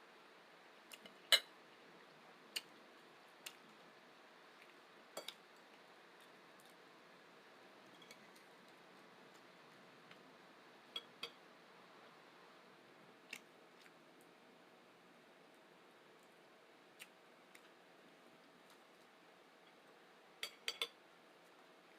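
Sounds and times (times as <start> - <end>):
faint steady hiss: 0.0 - 21.9
utensils clinking on dishes: 20.4 - 21.0.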